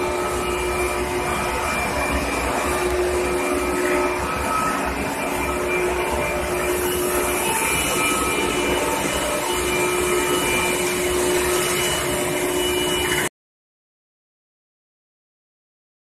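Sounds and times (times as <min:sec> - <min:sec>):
industrial machine hiss and hum: 0:00.0 - 0:13.3.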